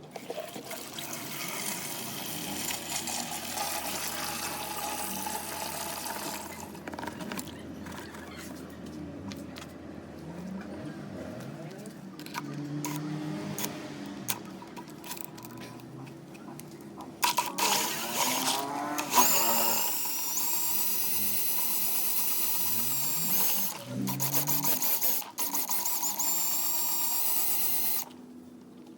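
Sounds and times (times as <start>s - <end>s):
small electric motor whining: 1.2s - 8.5s, 17.2s - 28.2s.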